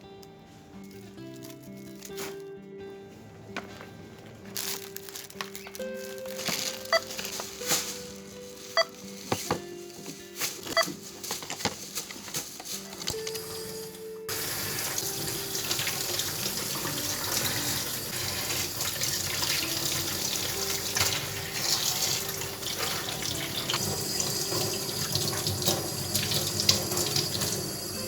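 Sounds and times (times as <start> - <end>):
tap water running into sink: 14.3 - 28.0.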